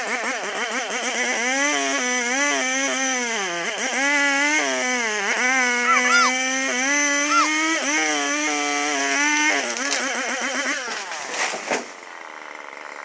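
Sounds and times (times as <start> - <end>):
chainsaw cutting wood: 0.0 - 13.0.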